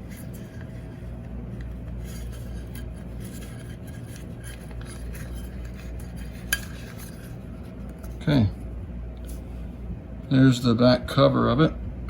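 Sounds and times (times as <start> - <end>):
steady low hum: 0.0 - 12.0
metal parts scraping and clicking: 1.6 - 8.1.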